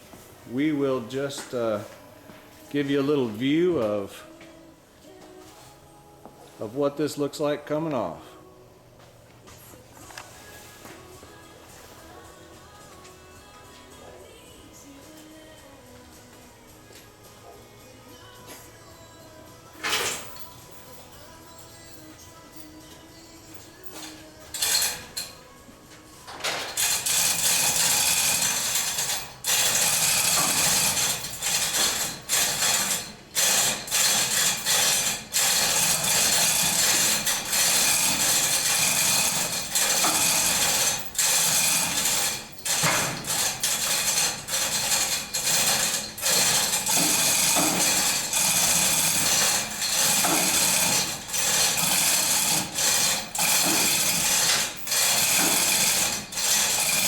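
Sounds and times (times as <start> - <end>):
mechanical ratcheting: 26.5 - 57.0.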